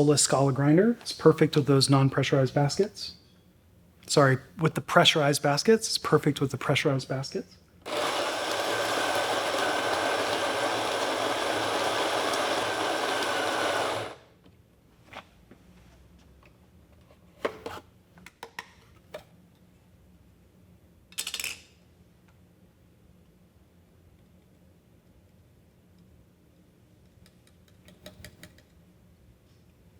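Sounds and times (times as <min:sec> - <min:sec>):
coffee grinder whirring: 0:07.9 - 0:14.3.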